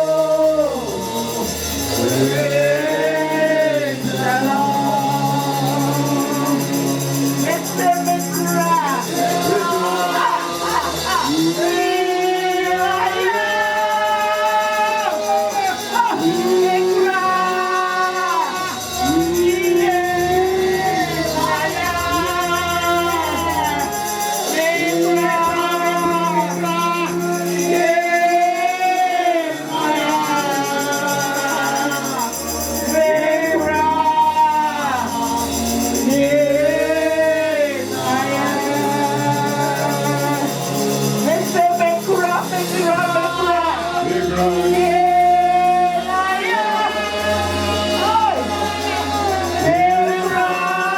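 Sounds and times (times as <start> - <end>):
band accompaniment with bass: 0.0 - 50.9
voices singing a melody: 0.0 - 50.9.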